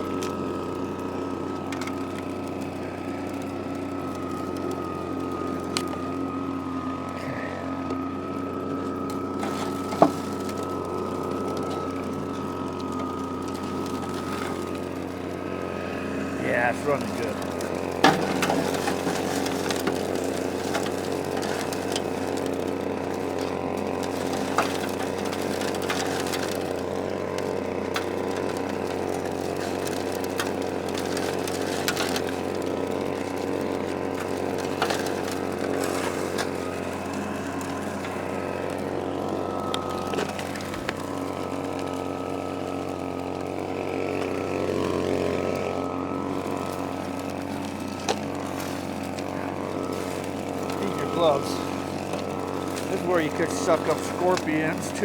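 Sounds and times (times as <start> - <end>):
small gas engine running: 0.0 - 55.0.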